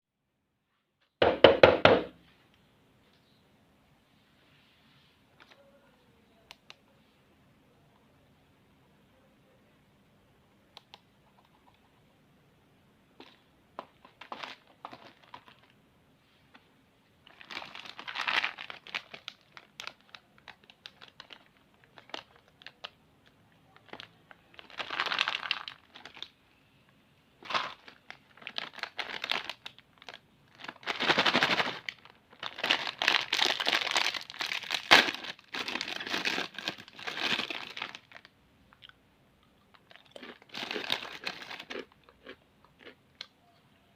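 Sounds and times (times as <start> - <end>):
plastic wrappers crinkling and tearing: 13.2 - 15.8, 17.2 - 26.4, 27.4 - 38.3, 39.7 - 42.9.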